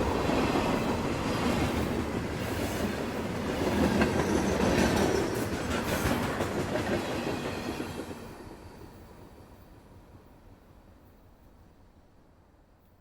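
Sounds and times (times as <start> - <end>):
train wheels clattering on track: 0.0 - 9.6.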